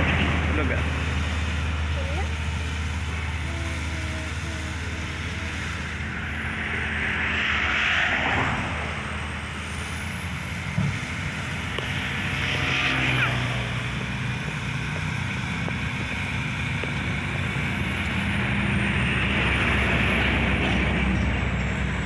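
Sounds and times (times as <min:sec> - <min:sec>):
bulldozer diesel engine running: 0:00.0 - 0:22.0
rushing noise: 0:00.0 - 0:22.0.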